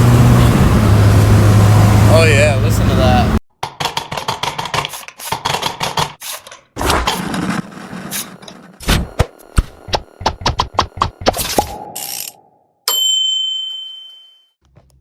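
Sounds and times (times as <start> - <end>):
scraping: 6.2 - 8.9.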